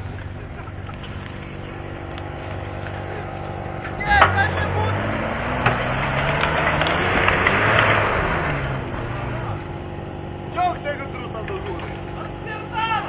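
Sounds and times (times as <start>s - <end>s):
off-road vehicle engine revving: 0.0s - 13.0s.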